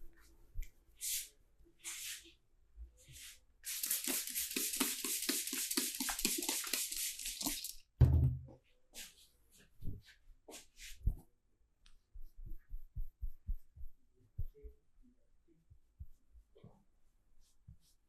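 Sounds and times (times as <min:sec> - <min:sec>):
loud thump: 0:08.0 - 0:08.5
even soft thumps: 0:08.0 - 0:08.6.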